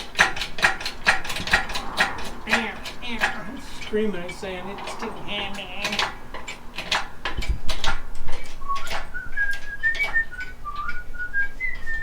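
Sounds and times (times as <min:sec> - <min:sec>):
sharp metallic clanks and knocks: 0:00.0 - 0:11.1
person whistling a tune: 0:08.5 - 0:12.0.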